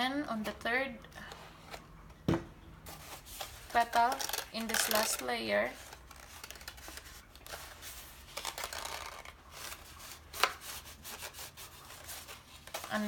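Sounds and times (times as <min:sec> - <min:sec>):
paper rustling and crinkling: 0:02.9 - 0:13.0.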